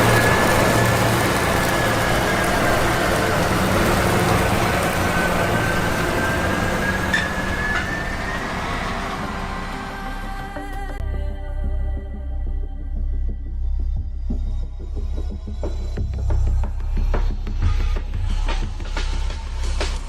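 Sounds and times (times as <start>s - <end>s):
combine harvester running: 0.0s - 11.0s
high whine: 0.0s - 20.0s.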